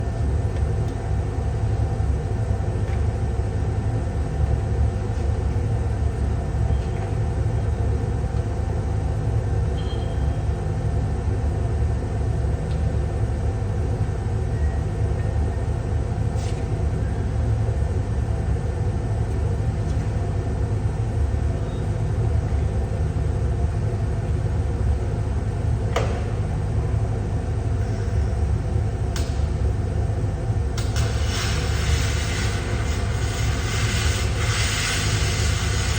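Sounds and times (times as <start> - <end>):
welding equipment humming: 28.5 - 35.9.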